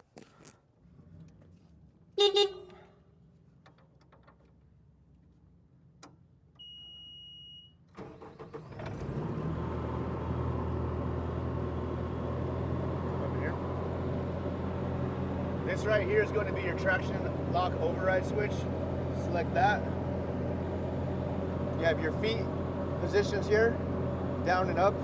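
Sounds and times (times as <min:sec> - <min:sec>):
double horn blast: 0:02.2 - 0:02.9
diesel engine cranking and idling: 0:07.8 - 0:25.0.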